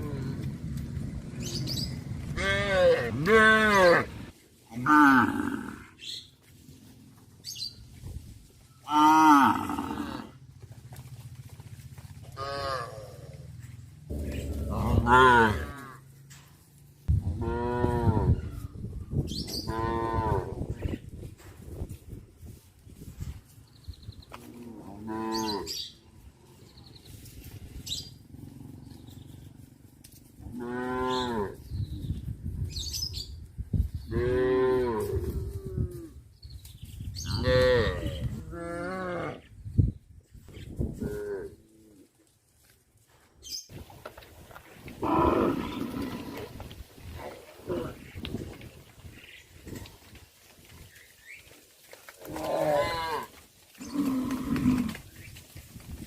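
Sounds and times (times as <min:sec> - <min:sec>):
cow mooing: 0:02.3 - 0:05.9, 0:08.9 - 0:10.4, 0:12.4 - 0:13.5, 0:14.1 - 0:16.1, 0:24.5 - 0:25.8, 0:30.4 - 0:31.6, 0:37.3 - 0:39.4, 0:52.3 - 0:55.0.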